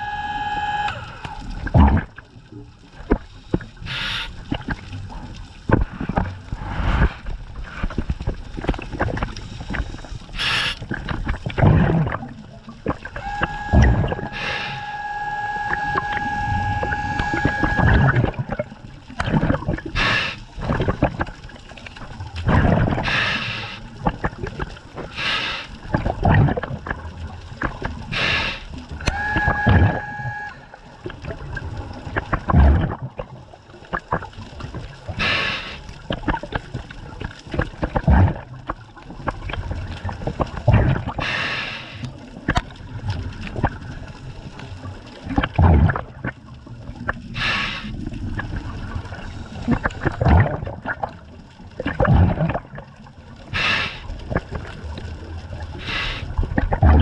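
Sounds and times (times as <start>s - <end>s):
steady pitched tone: 0.0s - 1.6s, 13.2s - 18.6s, 29.1s - 30.8s
bubbles gurgling: 0.0s - 57.0s
diver breathing through regulator: 3.8s - 4.4s, 6.5s - 7.8s, 10.4s - 10.8s, 13.2s - 18.1s, 20.0s - 20.5s, 23.0s - 23.9s, 25.1s - 25.8s, 28.1s - 30.6s, 35.2s - 35.9s, 41.2s - 42.2s, 47.4s - 48.0s, 53.5s - 54.1s, 55.8s - 56.4s.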